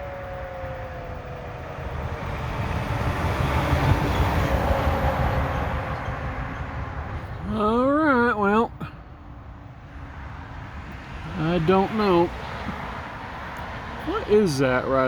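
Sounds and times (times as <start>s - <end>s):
warning siren winding down: 0.0s - 6.4s.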